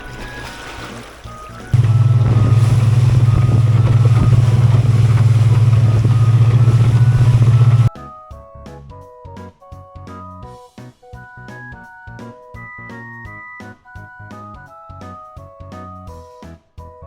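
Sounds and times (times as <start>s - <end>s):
boat engine droning: 1.8s - 7.9s.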